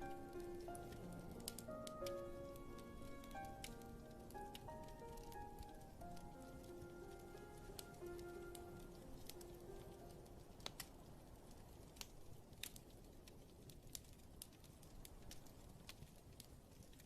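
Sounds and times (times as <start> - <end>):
piano notes: 0.0 - 11.4
fireplace crackling and popping: 0.0 - 17.0
soft rain-like hiss: 0.0 - 17.0.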